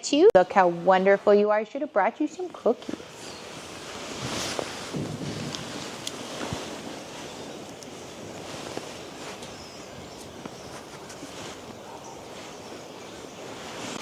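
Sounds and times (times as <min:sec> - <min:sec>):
wind blowing over microphone: 0:02.8 - 0:14.0.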